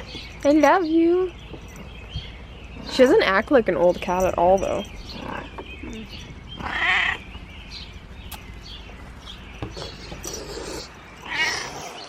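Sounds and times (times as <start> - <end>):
cat meowing: 6.6 - 7.2.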